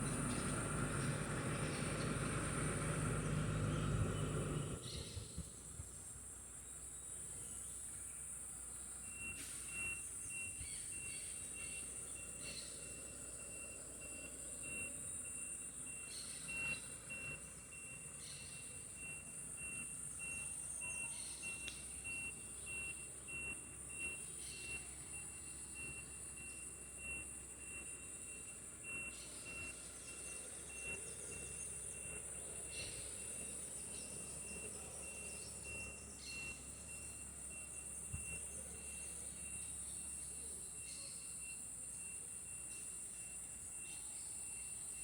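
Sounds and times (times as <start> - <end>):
high insect chirp: 0.0 - 45.0
insects buzzing: 0.0 - 45.0
low engine-like hum: 0.0 - 45.0
faint bird-like chirps: 9.0 - 45.0.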